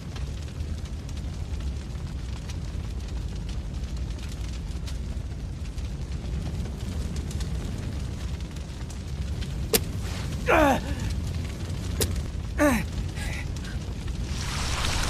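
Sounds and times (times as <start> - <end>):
low rumble: 0.0 - 15.0
sharp cracks: 8.9 - 15.0
short falling cries: 10.5 - 11.1, 12.6 - 13.4.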